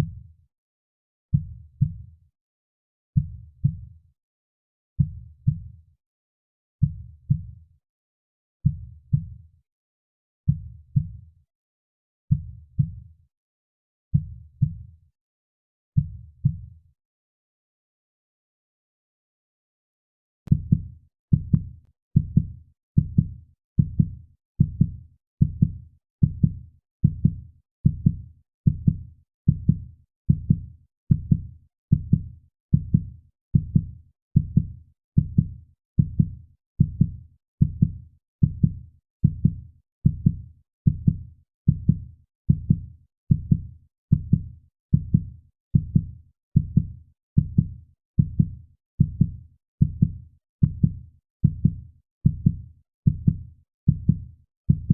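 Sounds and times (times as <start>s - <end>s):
heartbeat thumps: 52.3s - 54.9s.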